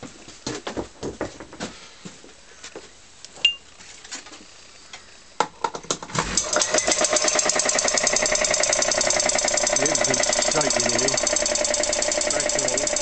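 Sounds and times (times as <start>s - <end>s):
scattered clicks and knocks: 5.4s - 13.0s
piston air compressor pulsing: 6.2s - 13.0s.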